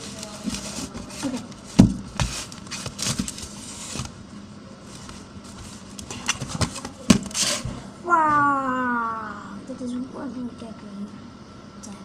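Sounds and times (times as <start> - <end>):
box and accessories being handled: 0.0 - 4.2, 4.9 - 7.7.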